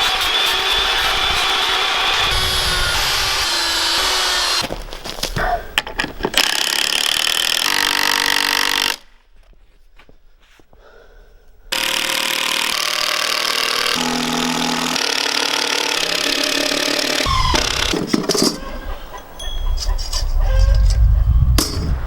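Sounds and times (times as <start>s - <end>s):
power tool running: 0.0s - 4.7s, 6.4s - 9.0s, 11.7s - 18.0s.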